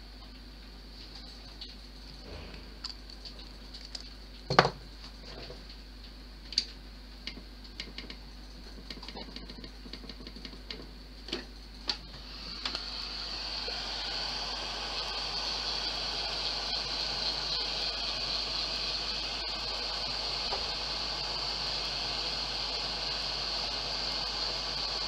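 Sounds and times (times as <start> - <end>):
clicks and taps of tools: 6.5 - 8.2, 8.9 - 12.0
faint steady high whine: 10.6 - 25.0.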